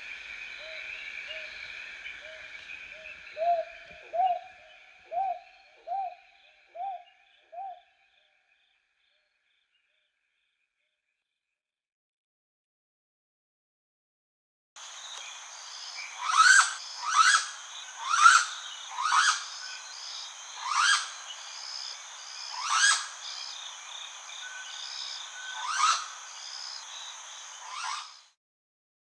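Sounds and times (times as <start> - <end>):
high insect drone: 0.0 - 5.6, 14.8 - 28.3.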